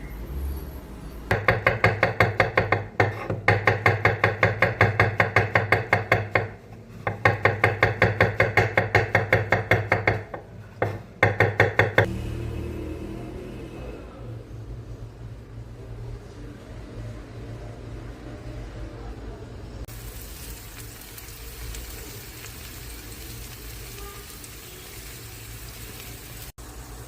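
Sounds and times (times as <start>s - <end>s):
knife chopping on cutting board: 1.3s - 12.1s.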